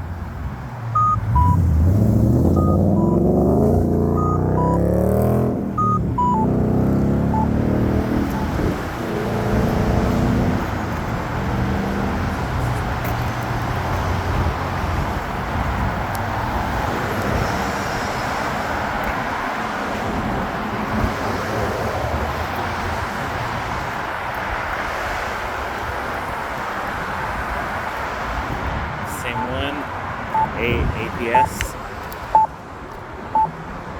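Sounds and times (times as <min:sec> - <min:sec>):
road traffic: 0:00.0 - 0:33.9
nearby vehicle engine: 0:00.9 - 0:10.7.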